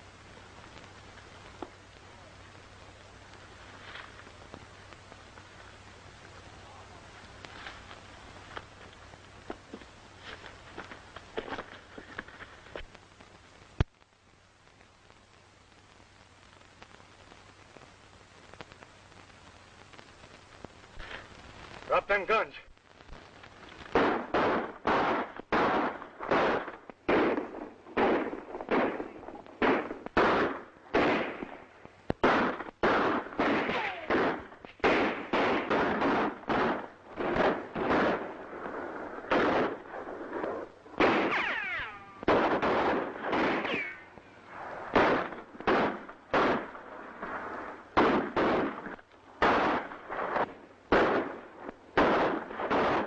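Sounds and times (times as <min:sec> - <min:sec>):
ricochet whines: 0:33.4 - 0:34.4, 0:41.0 - 0:44.2
gunshots with echo: 0:41.0 - 0:44.1.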